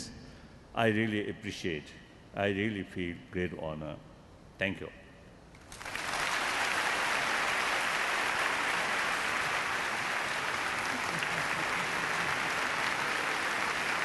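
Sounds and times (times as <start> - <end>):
large audience applauding: 5.7 - 14.0.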